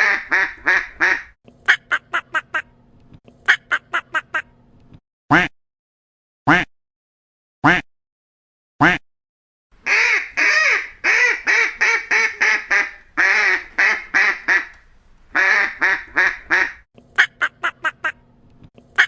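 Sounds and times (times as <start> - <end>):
duck quacking: 0.0 - 1.3, 9.8 - 16.8.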